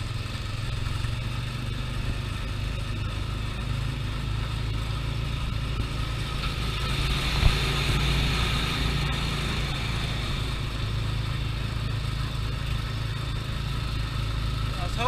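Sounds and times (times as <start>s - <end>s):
small gasoline engine running: 0.0s - 15.0s.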